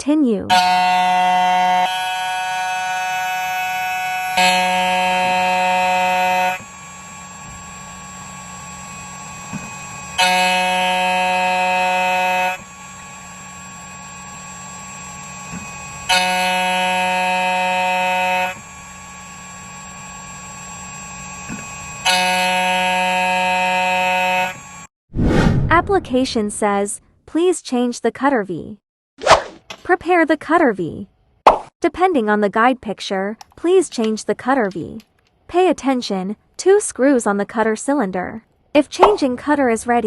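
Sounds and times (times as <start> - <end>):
machine whining cut: 0.5 - 24.9.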